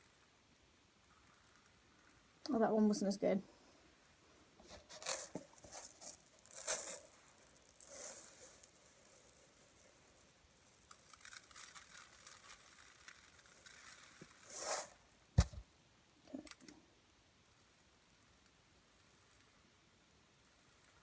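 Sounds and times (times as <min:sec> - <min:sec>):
rice grains pattering: 0:00.0 - 0:03.0, 0:03.9 - 0:15.6, 0:17.4 - 0:21.0
sharp knock: 0:15.4 - 0:15.6.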